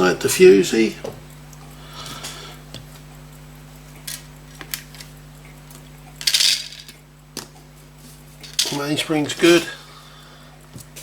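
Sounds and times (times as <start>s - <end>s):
steady electrical hum: 0.0s - 11.0s
small metal parts clicking: 6.2s - 7.0s, 8.4s - 8.9s.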